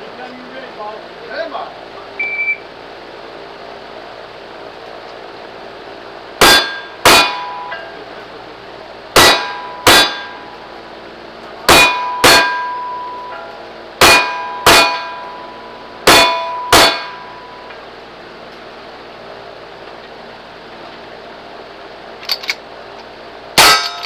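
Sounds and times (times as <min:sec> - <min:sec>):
steel targets ringing: 0:06.4 - 0:08.1, 0:09.1 - 0:10.8, 0:11.6 - 0:17.9, 0:23.6 - 0:24.0.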